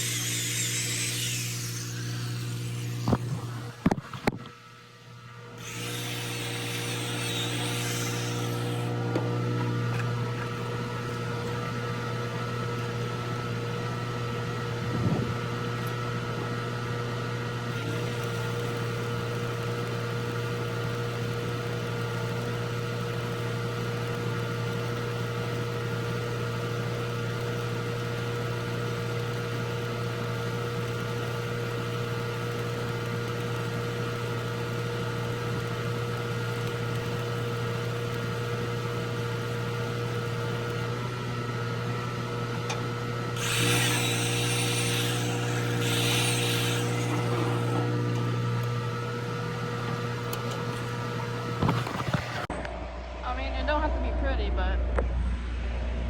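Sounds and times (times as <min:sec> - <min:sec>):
welding hiss: 0:00.0 - 0:03.6, 0:05.6 - 0:08.9, 0:43.4 - 0:47.2
welding machine humming: 0:00.0 - 0:52.5.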